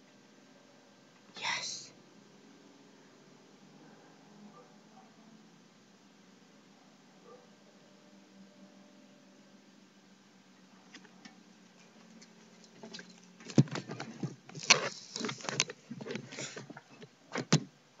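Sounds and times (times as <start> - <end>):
faint low hum: 0.0 - 18.0
handling clicks and rustles: 10.8 - 17.7.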